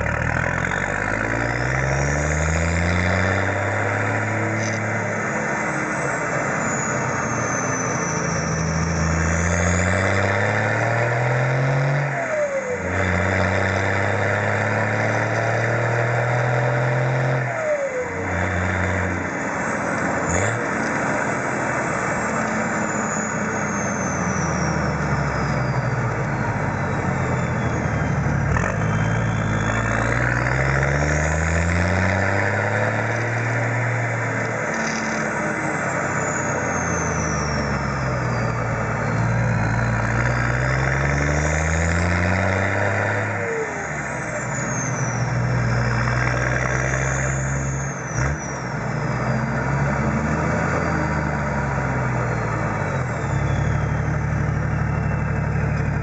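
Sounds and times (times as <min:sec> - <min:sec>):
diesel engine accelerating: 0:00.0 - 0:56.0
turbo whistling: 0:03.2 - 0:13.0, 0:14.2 - 0:56.0.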